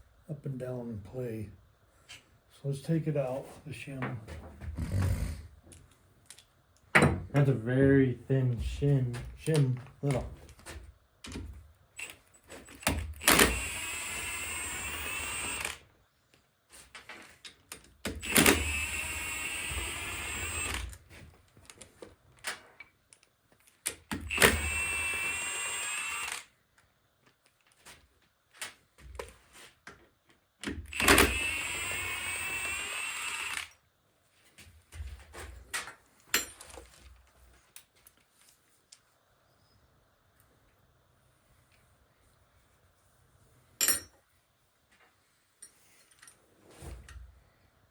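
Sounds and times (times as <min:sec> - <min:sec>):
power tool running: 0:18.2 - 0:20.8, 0:24.3 - 0:26.5, 0:30.9 - 0:33.7.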